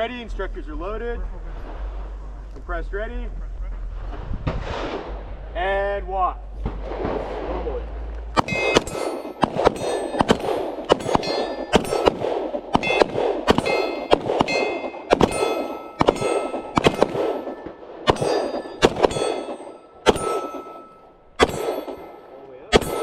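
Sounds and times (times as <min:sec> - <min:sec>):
pistol shots: 0:08.4 - 0:23.0.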